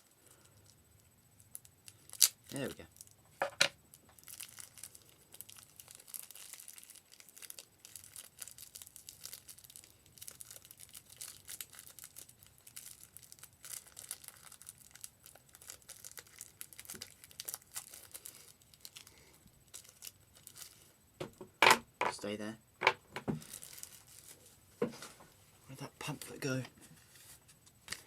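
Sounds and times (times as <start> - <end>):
small crackles and clicks: 0.3 - 3.2, 3.9 - 20.9
packaging crinkling: 1.4 - 3.2, 4.0 - 20.9, 23.3 - 24.6.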